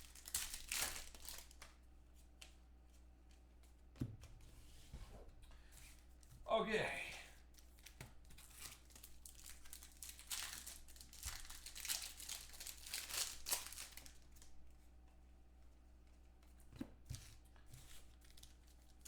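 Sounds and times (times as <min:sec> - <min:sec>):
wrapper tearing and crinkling: 0:00.0 - 0:01.8, 0:07.5 - 0:14.5, 0:18.2 - 0:19.0.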